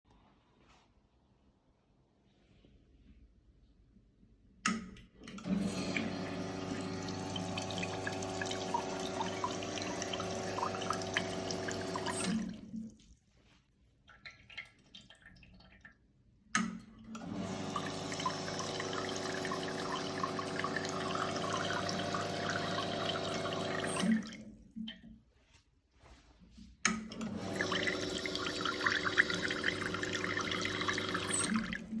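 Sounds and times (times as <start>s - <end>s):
espresso machine pump hum: 5.5s - 12.4s, 17.2s - 24.1s, 27.2s - 32.0s.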